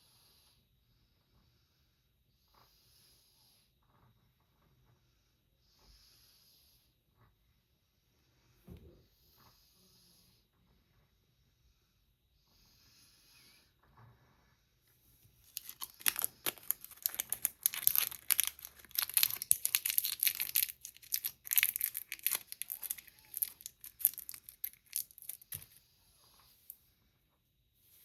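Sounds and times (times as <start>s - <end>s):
candy wrapper crinkling: 15.2s - 25.8s.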